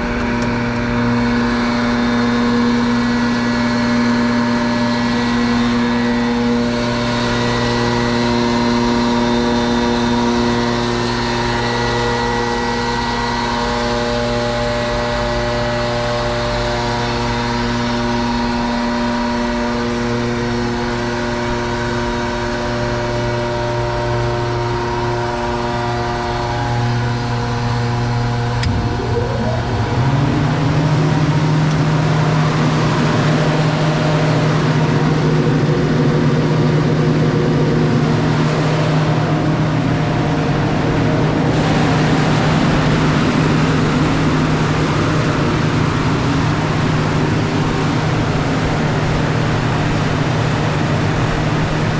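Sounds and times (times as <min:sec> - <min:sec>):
air compressor humming: 0:23.6 - 0:51.9
compressor click: 0:28.6 - 0:29.6.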